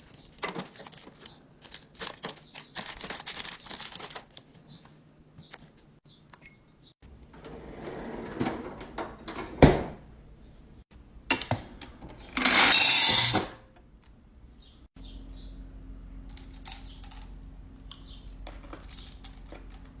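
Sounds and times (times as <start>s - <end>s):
plastic rustling: 0.0s - 4.6s
steady low hum: 14.1s - 20.0s.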